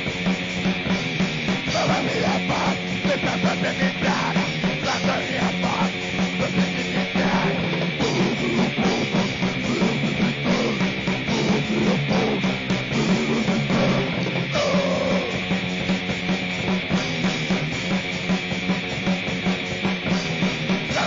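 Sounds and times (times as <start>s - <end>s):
distorted noise music: 0.0s - 21.0s.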